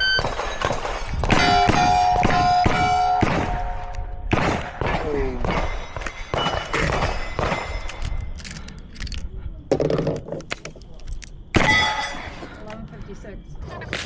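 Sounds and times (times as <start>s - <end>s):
steel targets clanging: 11.6s - 12.5s.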